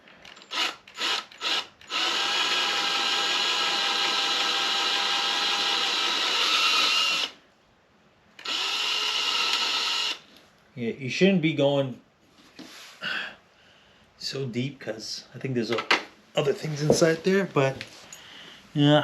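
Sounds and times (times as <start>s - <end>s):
electric drill boring into metal: 0.4s - 7.4s, 8.4s - 10.2s.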